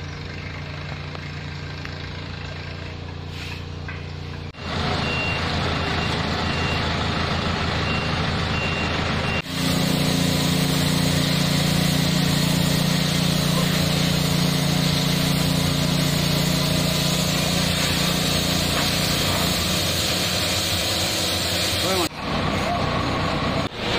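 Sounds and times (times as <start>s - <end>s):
construction machinery engines: 0.0s - 23.9s
reversing alarm beeping: 5.0s - 6.9s, 7.8s - 9.6s.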